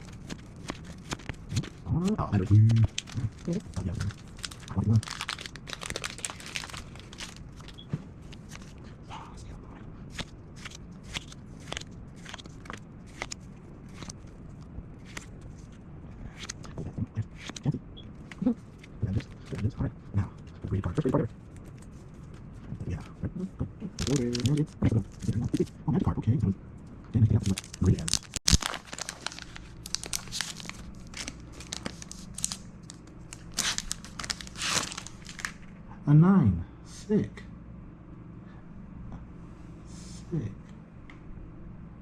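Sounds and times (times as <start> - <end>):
foil wrappers rustling: 2.6 - 7.8, 24.0 - 25.7, 27.4 - 35.6
plastic packaging crinkling: 2.6 - 8.7, 24.0 - 25.7, 27.4 - 35.7.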